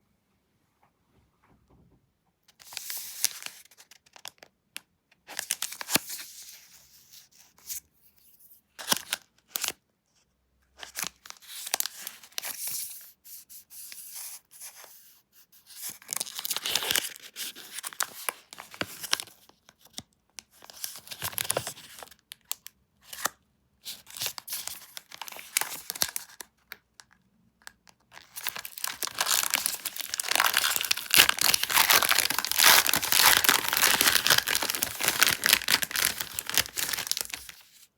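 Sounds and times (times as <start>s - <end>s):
packaging tearing and rustling: 15.8s - 19.4s, 20.6s - 22.1s, 23.9s - 26.4s, 28.1s - 37.9s.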